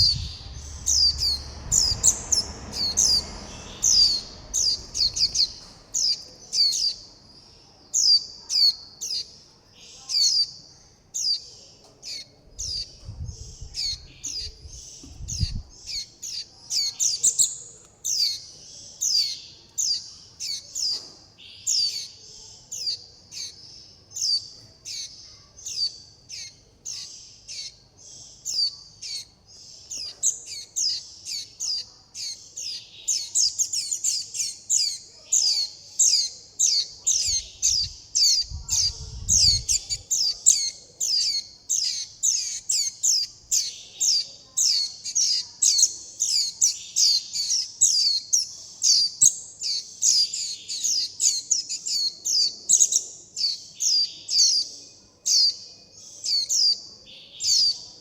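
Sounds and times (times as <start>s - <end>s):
low rumbles: 0.0s - 6.1s
juvenile birds begging calls: 0.0s - 58.0s.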